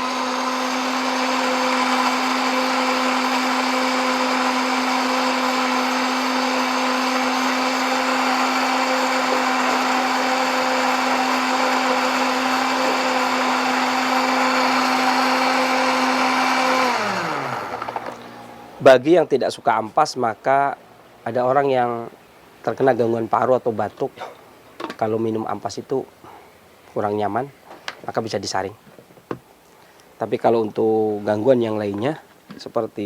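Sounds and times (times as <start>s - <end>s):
blender motor hum: 0.0s - 18.8s.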